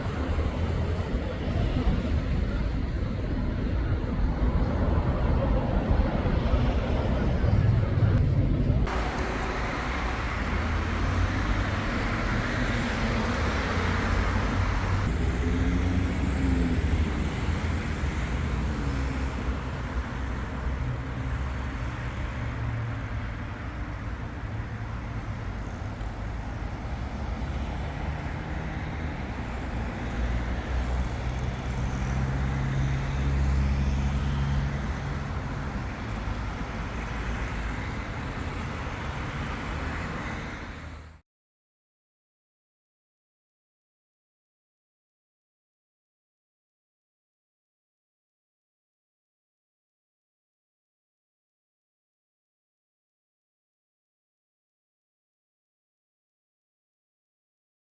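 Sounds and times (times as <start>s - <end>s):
engine rumble: 0.0s - 22.9s.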